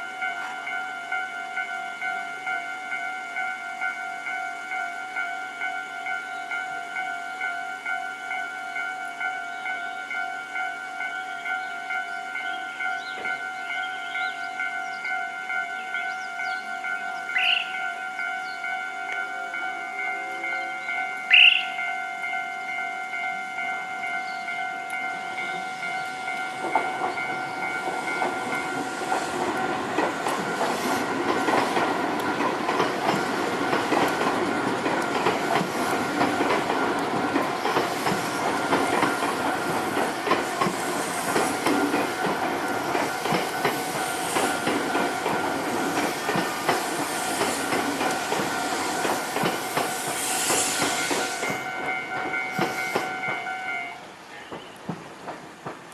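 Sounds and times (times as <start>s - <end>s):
level crossing alarm ringing: 0.0s - 37.6s, 50.8s - 54.1s
train wheels clacking over rail joints: 25.8s - 55.9s.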